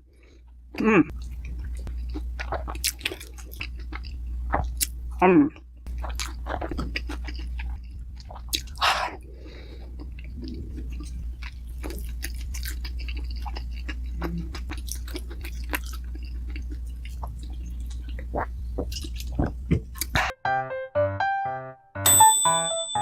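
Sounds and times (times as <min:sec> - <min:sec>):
close chewing with wet smacks: 0:01.1 - 0:04.9, 0:05.9 - 0:08.8, 0:10.0 - 0:20.2.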